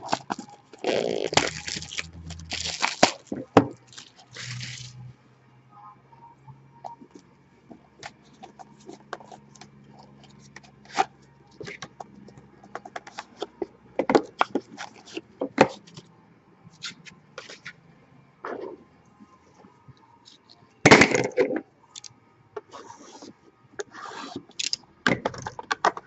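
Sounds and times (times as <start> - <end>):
card box wrapping crinkling: 0.0 - 4.9.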